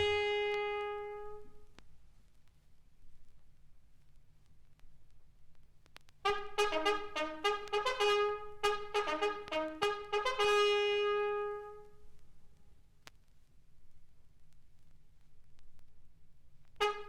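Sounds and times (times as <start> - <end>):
bugle call: 0.0 - 1.5, 6.3 - 11.9.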